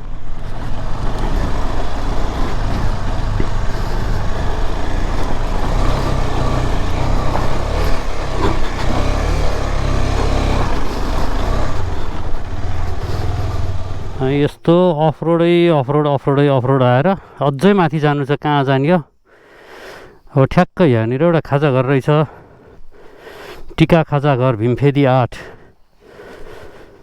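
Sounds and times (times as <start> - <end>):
motorcycle engine running: 0.0 - 14.5.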